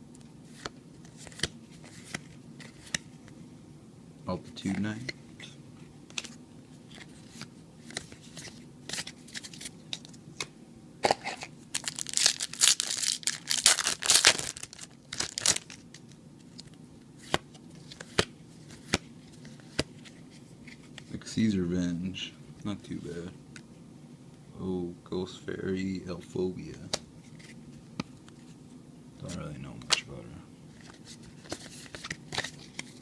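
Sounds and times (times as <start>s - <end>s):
foil wrapper crinkling and tearing: 11.7s - 16.0s.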